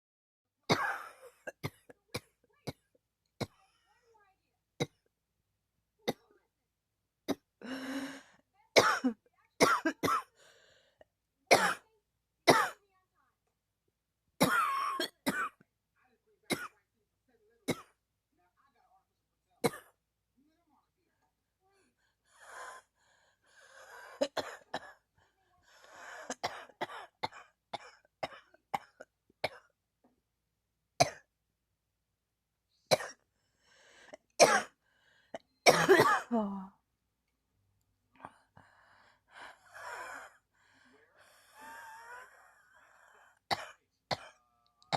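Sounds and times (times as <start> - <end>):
person coughing: 8.8 - 10.3, 34.4 - 34.8, 35.6 - 36.7
faint breath: 10.3 - 11.0, 21.9 - 24.2, 33.3 - 34.2, 34.8 - 35.4, 38.2 - 43.5.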